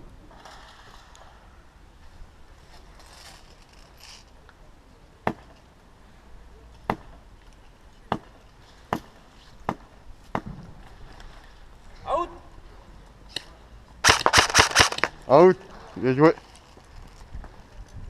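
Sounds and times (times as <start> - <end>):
airsoft gun single shots: 14.0 - 15.2.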